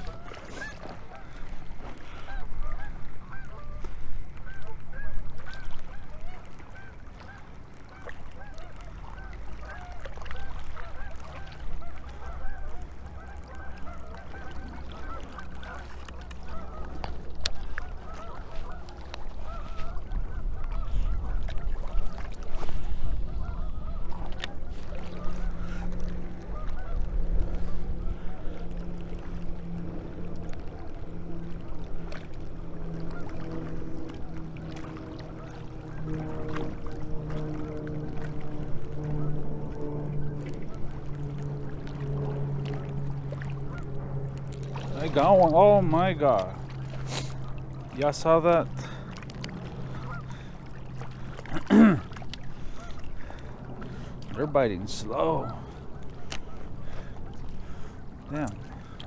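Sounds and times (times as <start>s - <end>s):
low steady rumble: 0.0s - 59.0s
flock of birds calling: 4.5s - 22.3s, 49.8s - 51.9s.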